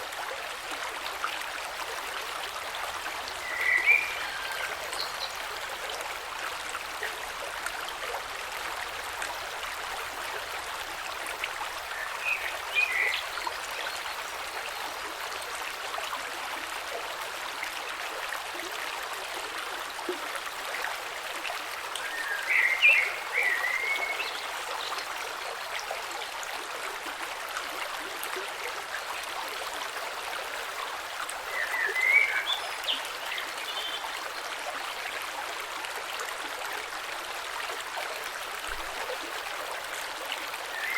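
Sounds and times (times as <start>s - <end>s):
creek water trickling over stones: 0.0s - 40.9s.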